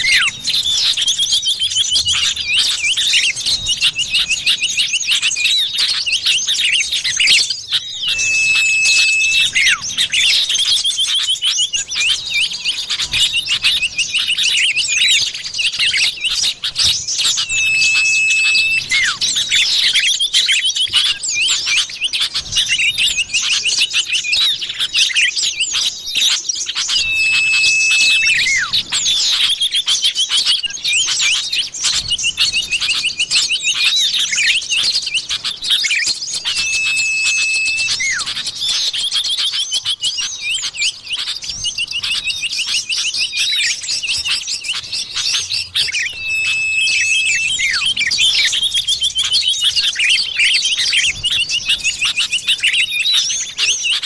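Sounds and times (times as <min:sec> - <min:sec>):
long level whistle: 0:00.0 - 0:01.0, 0:07.2 - 0:10.8, 0:15.9 - 0:21.5, 0:26.2 - 0:29.6, 0:35.9 - 0:39.2, 0:44.7 - 0:50.5
bird chirps and trills: 0:00.0 - 0:54.0.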